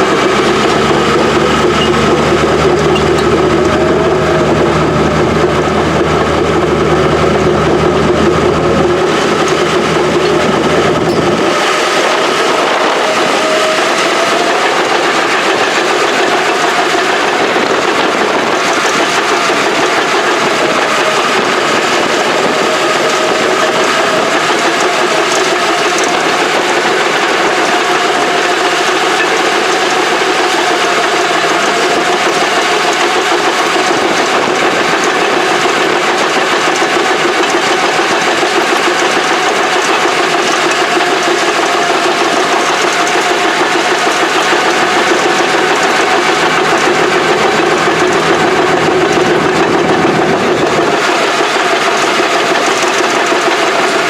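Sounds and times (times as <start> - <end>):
wavering tone: 0.0 - 16.2
heavy equipment engine clattering: 0.0 - 54.0
deep low rumble: 0.1 - 12.2.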